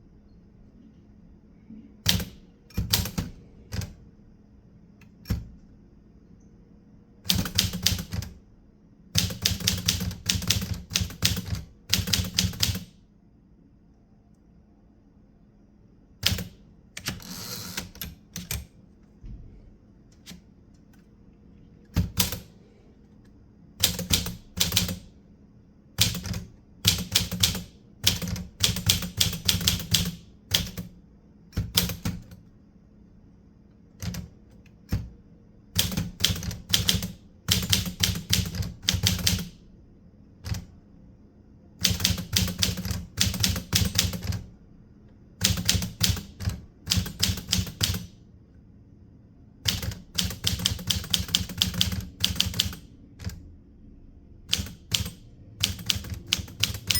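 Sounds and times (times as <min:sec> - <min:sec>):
typewriter keys clacking: 0:54.6 - 0:56.9.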